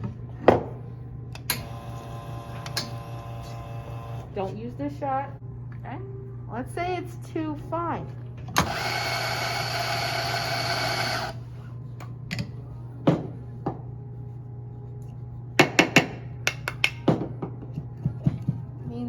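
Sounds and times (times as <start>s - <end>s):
espresso grinder motor: 1.6s - 4.3s, 8.6s - 11.4s.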